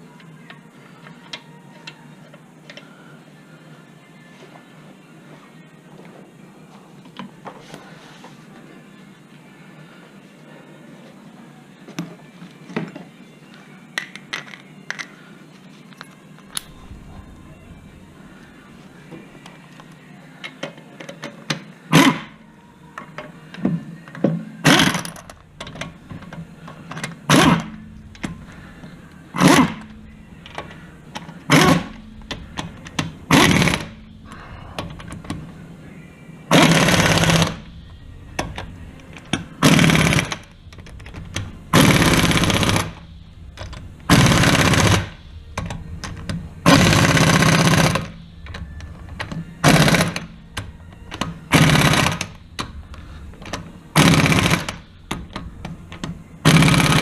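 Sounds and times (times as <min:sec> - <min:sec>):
impact wrench bursts: 0:21.9 - 0:22.4, 0:24.6 - 0:28.6, 0:29.3 - 0:35.2, 0:36.5 - 0:37.7, 0:38.4 - 0:48.6, 0:49.2 - 0:55.7, 0:56.4 - 0:57.0.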